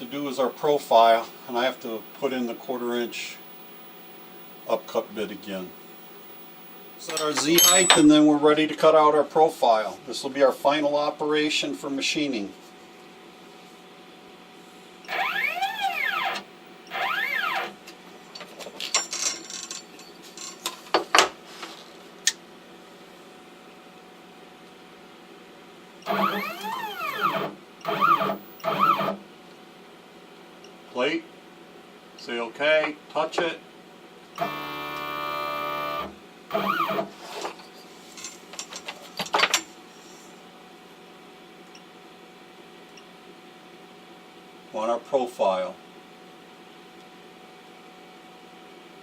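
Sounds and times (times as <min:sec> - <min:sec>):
router motors whining: 0:00.0 - 0:07.2, 0:15.1 - 0:17.8, 0:26.0 - 0:29.2, 0:34.4 - 0:37.2.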